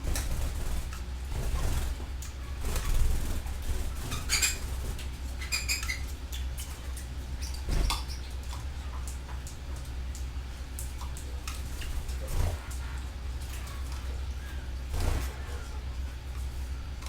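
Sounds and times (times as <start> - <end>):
steady low hum: 0.0 - 17.0
canaries chirping: 0.1 - 9.1, 11.8 - 15.9.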